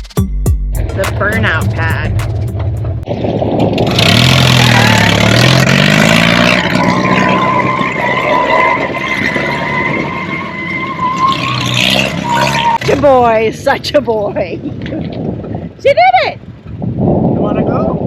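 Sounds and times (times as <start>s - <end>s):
car engine revving hard: 3.8s - 12.8s
tyres squealing: 6.5s - 12.9s.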